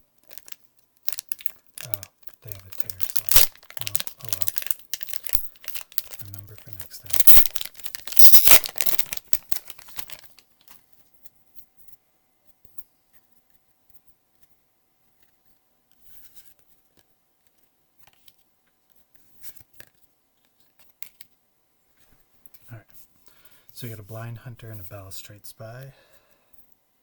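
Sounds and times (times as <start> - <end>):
foil wrapper crinkling: 0.2 - 10.8
trading cards rustling and tapping: 0.2 - 10.8.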